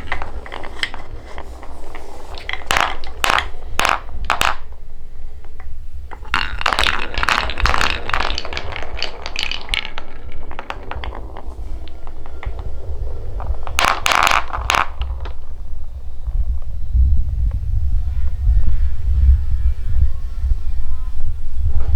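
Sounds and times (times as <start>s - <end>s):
marbles clattering on wooden track: 0.0s - 16.7s
steady low rumble: 7.1s - 21.9s.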